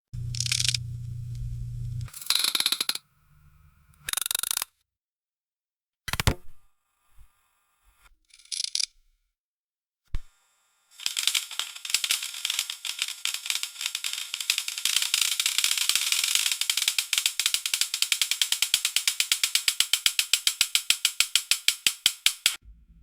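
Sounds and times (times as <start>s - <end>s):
bin lid ratchet clicks: 0.3s - 0.8s, 2.1s - 3.0s, 8.4s - 8.9s, 14.5s - 22.6s.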